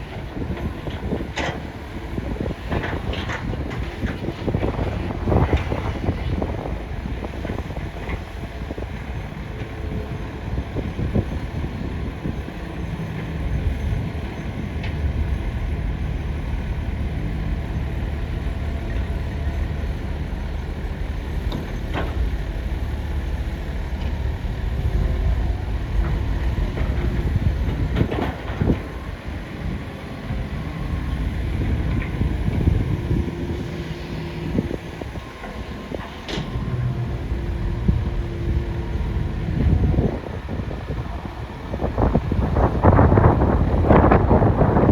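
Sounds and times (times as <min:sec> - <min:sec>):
excavator engine drone: 0:00.0 - 0:44.9.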